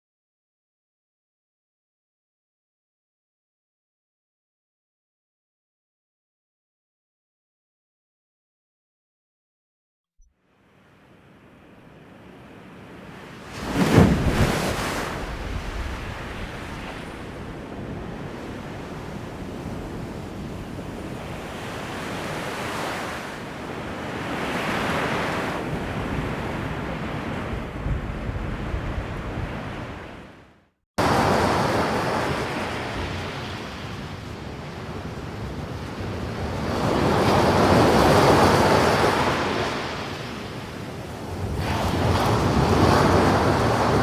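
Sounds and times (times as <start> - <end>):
ocean surf washes: 10.5 - 44.0.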